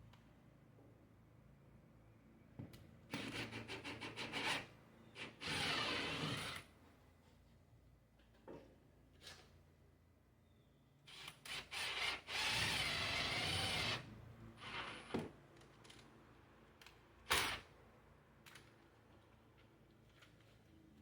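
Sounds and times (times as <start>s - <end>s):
power drill running: 5.4s - 6.6s, 11.7s - 15.0s.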